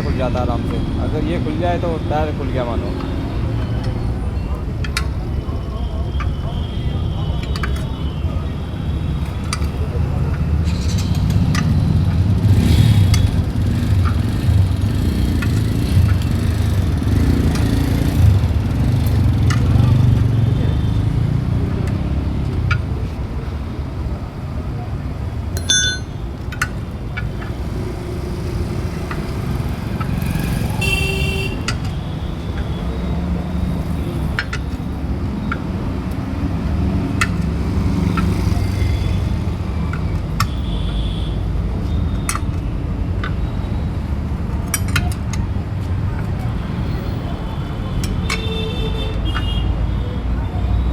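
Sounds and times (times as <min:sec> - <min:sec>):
road traffic rumble: 0:00.0 - 0:50.9
hammer striking metal chisel: 0:25.6 - 0:26.2
metallic clinks: 0:25.6 - 0:26.3.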